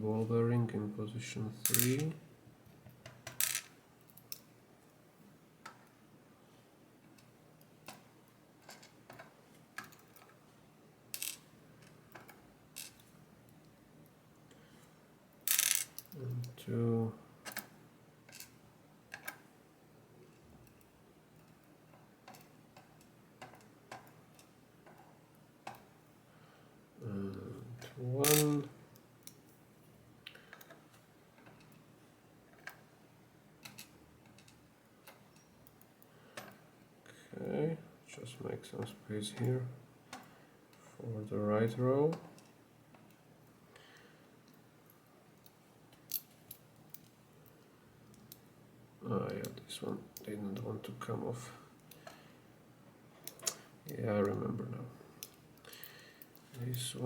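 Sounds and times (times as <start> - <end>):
small metal lock parts clicking: 21.4 - 25.9, 27.8 - 29.4, 33.6 - 36.6, 53.2 - 54.4.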